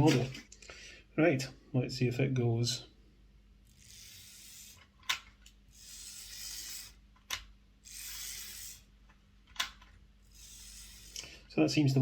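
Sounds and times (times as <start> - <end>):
model locomotive motor running: 3.7 - 4.8, 5.7 - 6.9, 7.8 - 8.8, 10.3 - 11.2.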